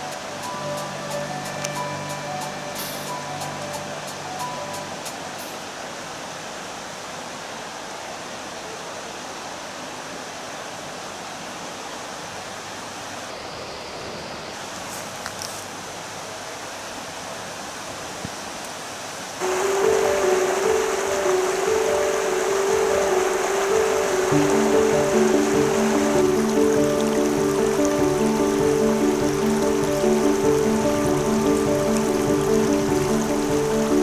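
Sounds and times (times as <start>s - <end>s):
music: 0.0s - 5.6s, 19.4s - 34.0s
river water rushing: 0.0s - 13.3s, 14.5s - 34.0s.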